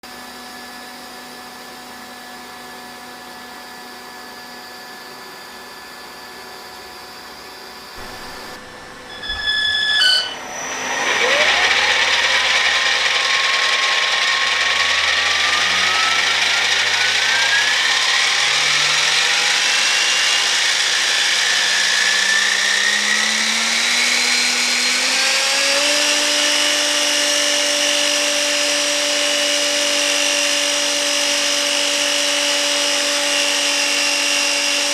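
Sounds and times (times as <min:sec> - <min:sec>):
propeller whine rising in pitch: 0:10.4 - 0:34.9.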